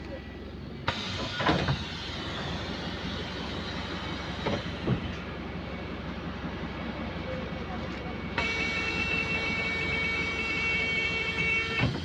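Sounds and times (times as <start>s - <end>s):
bus engine drone: 0.0s - 12.0s
bus body rattles and knocks: 1.0s - 2.6s, 4.2s - 5.3s, 11.2s - 12.0s.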